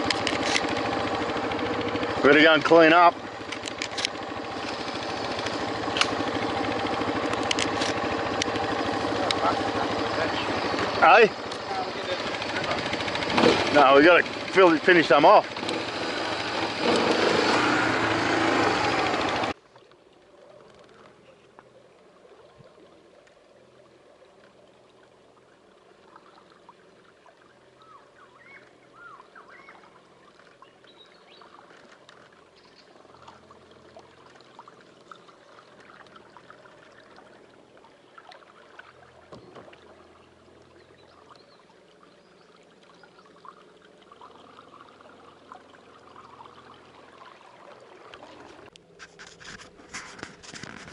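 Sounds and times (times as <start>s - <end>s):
water trickling and dripping: 19.5s - 48.9s
soft water plops: 29.1s - 48.8s.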